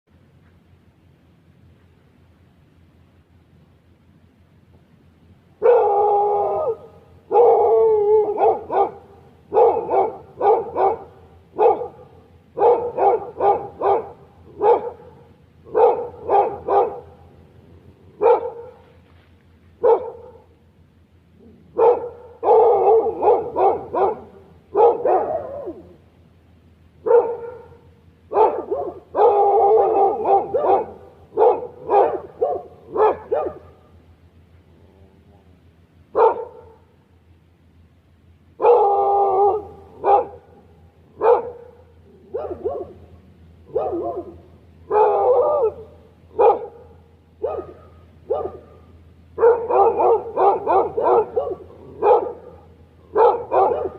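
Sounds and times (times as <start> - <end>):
dog barking: 5.6 - 17.3, 18.2 - 18.9, 19.8 - 20.5, 21.7 - 26.0, 27.0 - 33.8, 36.1 - 36.9, 38.6 - 40.6, 41.2 - 43.1, 43.7 - 53.9.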